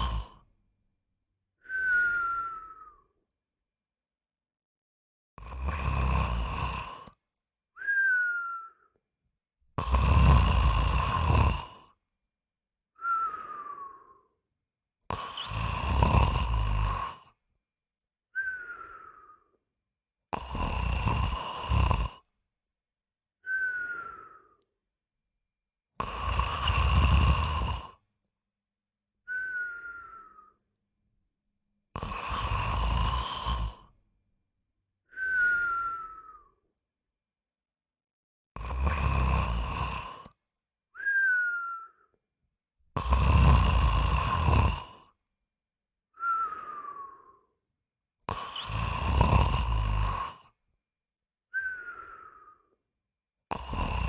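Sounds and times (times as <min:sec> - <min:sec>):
rough snoring: 0:00.0 - 0:00.4, 0:05.4 - 0:07.2, 0:09.8 - 0:12.0, 0:15.1 - 0:17.4, 0:20.4 - 0:22.3, 0:26.0 - 0:28.0, 0:32.0 - 0:33.9, 0:38.6 - 0:40.4, 0:43.0 - 0:45.2, 0:48.3 - 0:50.6, 0:53.5 - 0:54.0
whistling breath falling in pitch: 0:01.6 - 0:03.2, 0:07.8 - 0:09.0, 0:13.0 - 0:14.4, 0:18.4 - 0:19.6, 0:23.4 - 0:24.8, 0:29.3 - 0:30.7, 0:35.1 - 0:36.7, 0:41.0 - 0:42.2, 0:46.2 - 0:47.6, 0:51.5 - 0:52.8.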